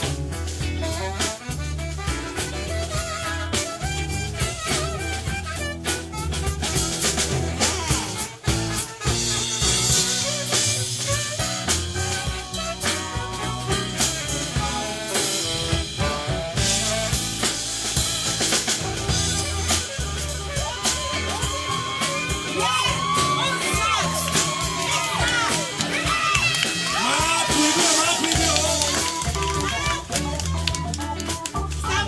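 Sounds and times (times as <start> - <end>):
live band playing: 0.0 - 32.0
audience whooping and cheering: 18.8 - 32.0.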